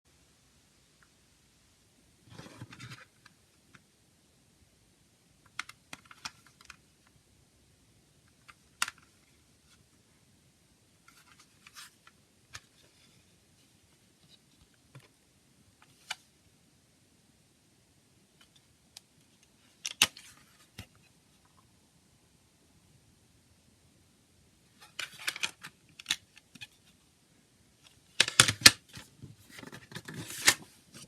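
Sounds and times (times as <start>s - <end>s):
plastic cd case clicking: 18.4s - 20.9s, 28.2s - 30.6s.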